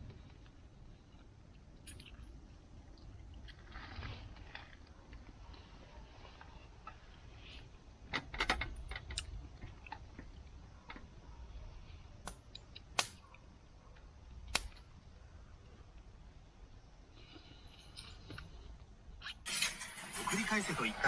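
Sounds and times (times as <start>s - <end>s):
sharp clicks of small objects: 12.2s - 13.3s.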